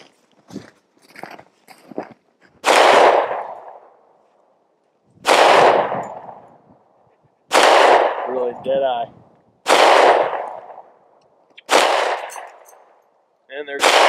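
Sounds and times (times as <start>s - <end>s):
echoing gunshots: 2.6s - 4.0s, 5.2s - 6.5s, 7.5s - 8.6s, 9.6s - 12.6s, 13.7s - 14.0s.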